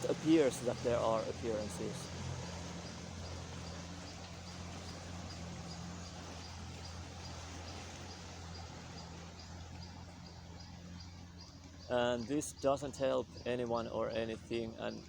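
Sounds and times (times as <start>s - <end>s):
distant boat engine drone: 0.0s - 15.0s.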